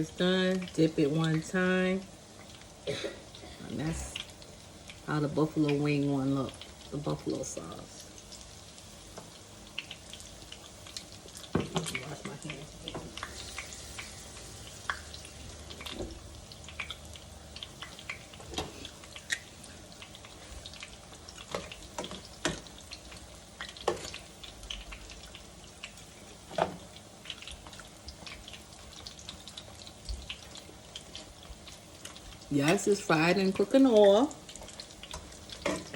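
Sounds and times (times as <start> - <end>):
frying in hot oil: 0.0 - 35.9
tap water running: 14.8 - 35.9.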